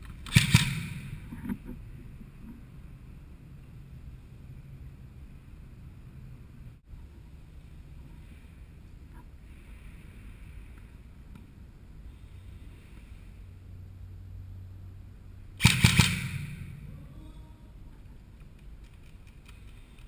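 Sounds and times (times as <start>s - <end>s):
airsoft gun rapid shots: 0.2s - 1.2s, 15.6s - 16.7s.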